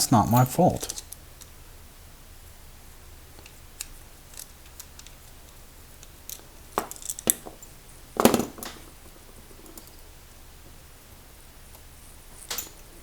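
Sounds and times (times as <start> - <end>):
metal padlock parts clinking: 0.1 - 1.5, 6.0 - 7.7, 12.4 - 12.9.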